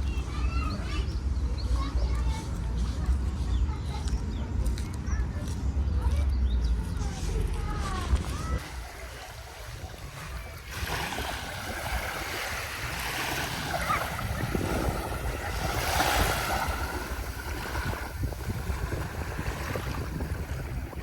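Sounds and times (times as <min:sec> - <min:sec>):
wind rumbling on microphone: 0:00.0 - 0:21.0
waves washing on beach: 0:08.0 - 0:21.0.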